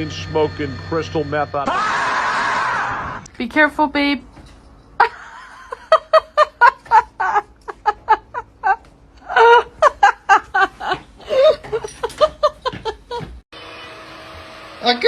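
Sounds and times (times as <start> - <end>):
person laughing hard: 5.1 - 13.3.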